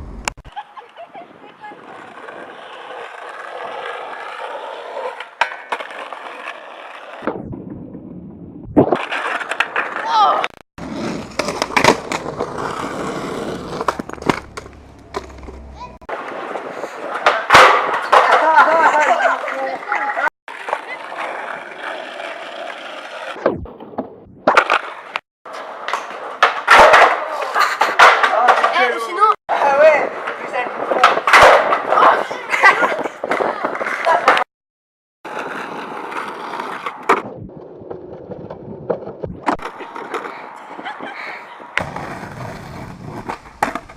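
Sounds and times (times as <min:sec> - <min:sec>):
skateboard wheels rolling on pavement: 0:00.0 - 0:34.5, 0:35.2 - 0:43.9
skateboard clacks: 0:01.7 - 0:07.2, 0:09.0 - 0:23.3, 0:24.5 - 0:34.4, 0:41.7 - 0:43.9.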